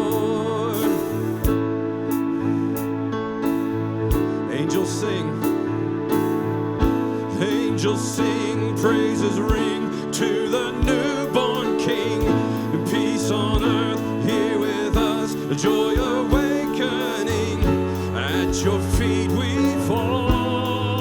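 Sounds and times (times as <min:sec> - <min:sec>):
worship band playing: 0:00.0 - 0:21.0
steady drum beat: 0:12.2 - 0:21.0.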